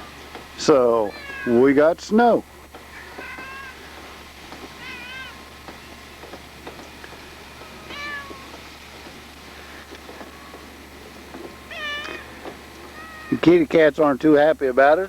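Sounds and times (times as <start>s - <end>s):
cat meowing: 0.9s - 1.7s, 2.9s - 3.9s, 4.7s - 5.6s, 6.9s - 8.6s, 9.9s - 10.9s, 11.5s - 13.4s.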